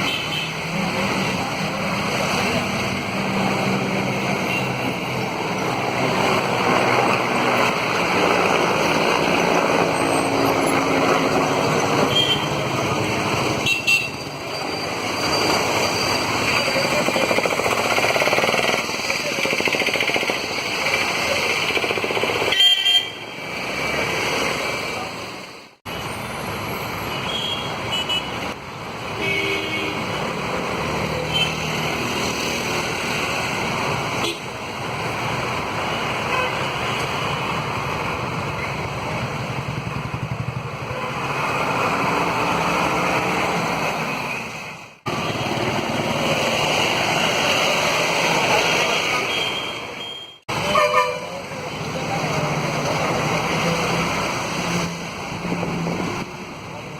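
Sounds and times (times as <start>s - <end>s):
vehicles passing: 0.0s - 56.9s
car horn toots: 49.3s - 51.3s.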